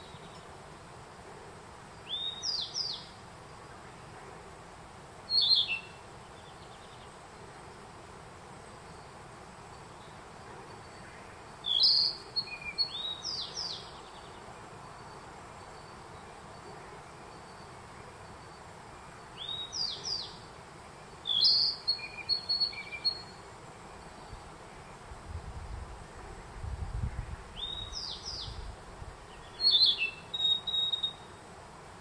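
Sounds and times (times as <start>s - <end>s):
steady background hiss: 0.0s - 32.0s
bird whistles and trills: 29.6s - 31.3s.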